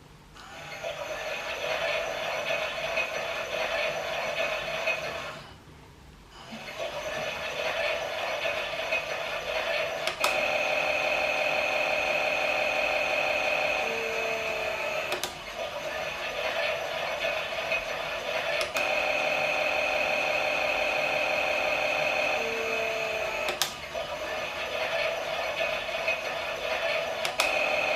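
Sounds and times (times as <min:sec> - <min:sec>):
toy washing machine motor whirring: 0:00.4 - 0:05.4, 0:06.4 - 0:27.9.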